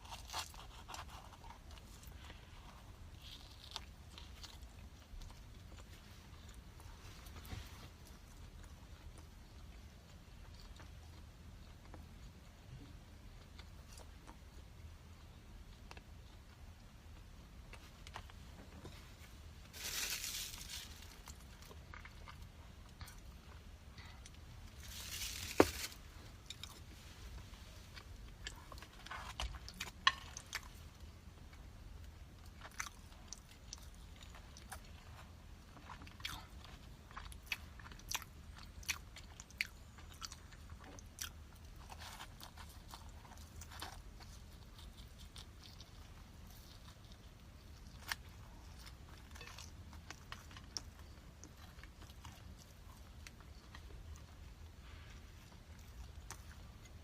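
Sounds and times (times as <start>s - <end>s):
person chewing crunchy food: 0.0s - 7.3s, 32.4s - 57.0s.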